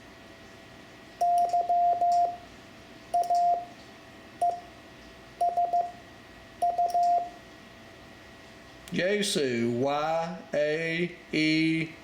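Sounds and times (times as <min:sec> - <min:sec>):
morse code beeping tone: 0:01.2 - 0:02.4, 0:03.2 - 0:03.7, 0:05.4 - 0:06.0, 0:06.6 - 0:07.4.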